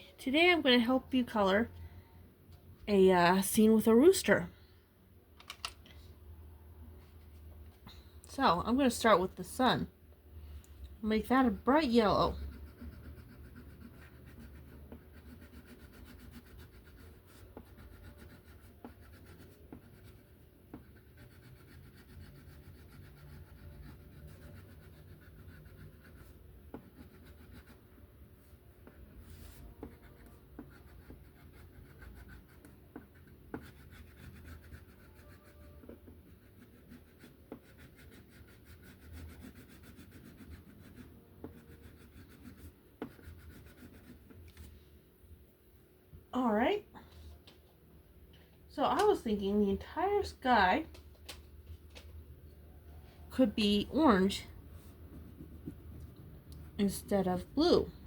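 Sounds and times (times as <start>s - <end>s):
coloring tool scratching on paper: 11.1s - 44.4s.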